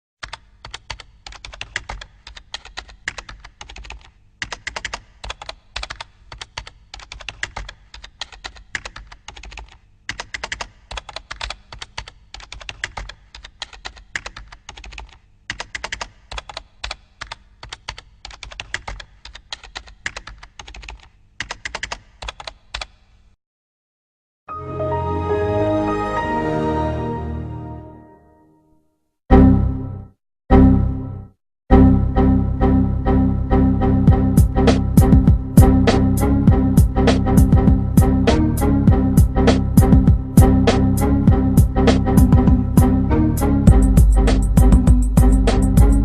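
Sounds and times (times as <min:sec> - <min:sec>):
keyboard typing: 0:00.2 - 0:23.1
music: 0:24.5 - 0:46.0.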